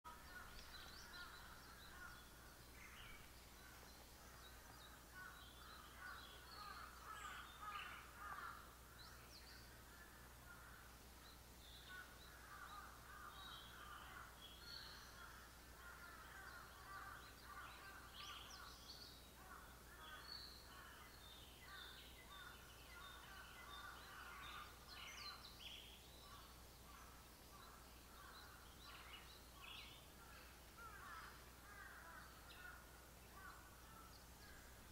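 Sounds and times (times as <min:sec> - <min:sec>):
birds singing: 0:00.1 - 0:34.9.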